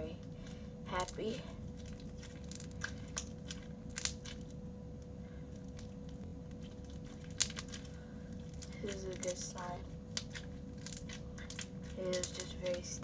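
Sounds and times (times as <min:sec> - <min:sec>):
faint steady hum: 0:00.0 - 0:13.0
crunchy slime squeezed by hand: 0:01.6 - 0:04.6, 0:05.5 - 0:12.5.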